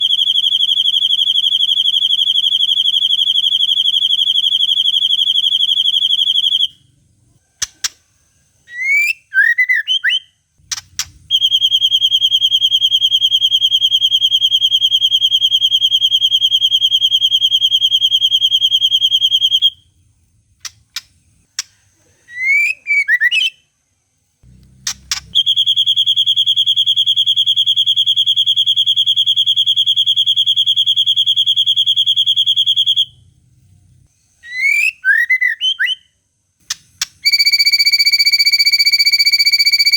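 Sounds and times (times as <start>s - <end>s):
bird whistled phrases: 8.7s - 19.8s, 22.2s - 23.6s, 34.4s - 36.1s
bird clicks: 20.6s - 21.8s.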